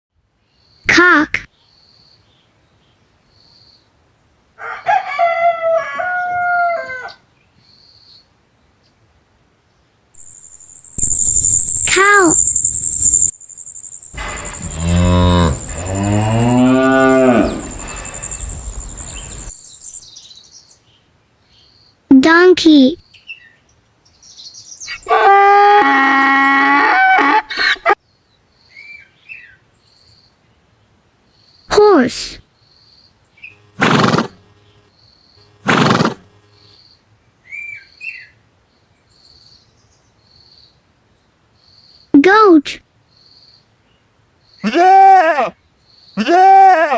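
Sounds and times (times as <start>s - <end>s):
high pulsing chirp: 10.2s - 20.1s, 33.5s - 36.8s
cow mooing: 14.2s - 19.5s, 25.0s - 27.5s
horse snorting: 14.2s - 19.5s, 33.8s - 34.5s, 35.6s - 36.4s.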